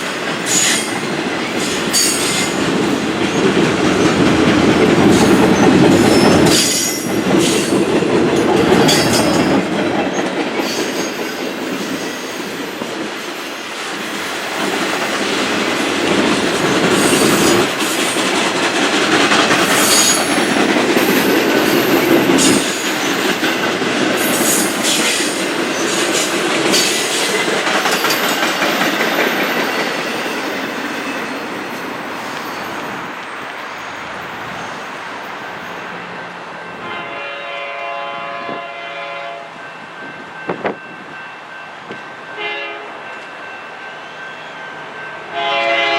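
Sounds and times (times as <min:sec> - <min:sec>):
wheels clacking over rail joints: 0:00.0 - 0:13.2, 0:13.8 - 0:37.1
train rolling past: 0:00.0 - 0:45.9.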